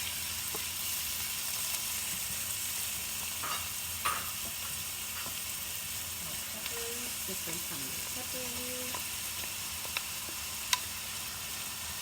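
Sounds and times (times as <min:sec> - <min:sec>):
onions sizzling in oil: 0:00.0 - 0:12.0.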